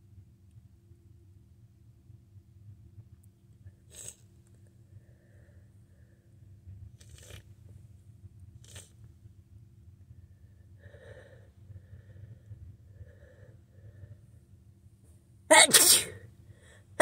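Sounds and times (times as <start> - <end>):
wet nose sniffles: 3.9 - 4.2.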